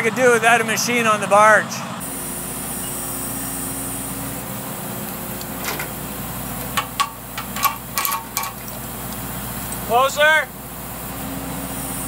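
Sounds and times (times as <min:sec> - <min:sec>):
truck engine idling: 0:00.0 - 0:12.0
short clicks and knocks: 0:06.6 - 0:09.2.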